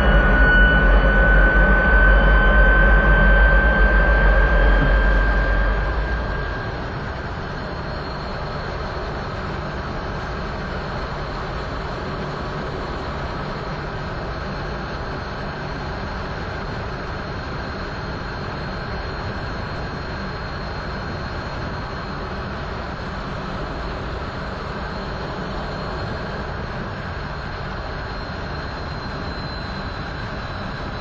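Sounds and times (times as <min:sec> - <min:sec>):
aircraft engine rumbling: 0:00.0 - 0:09.3
faint high whine: 0:00.0 - 0:13.8.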